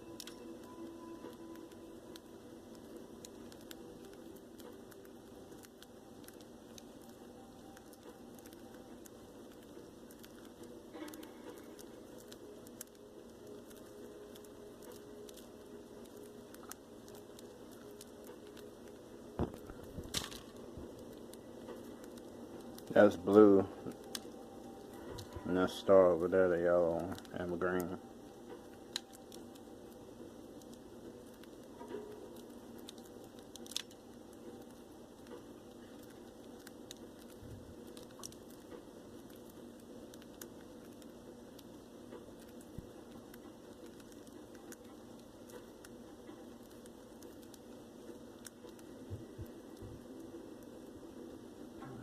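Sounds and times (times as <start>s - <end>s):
birds pecking seed: 0.0s - 51.7s
beaks pecking clicks: 28.6s - 49.0s.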